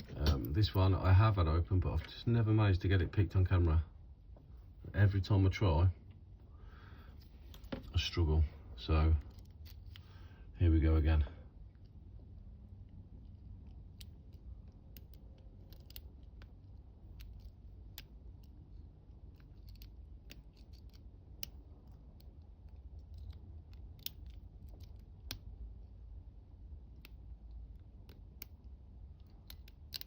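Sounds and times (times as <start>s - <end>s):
low steady hum: 0.0s - 30.0s
lock pick clicks and scratches: 9.2s - 10.0s, 13.3s - 25.6s, 26.9s - 30.0s.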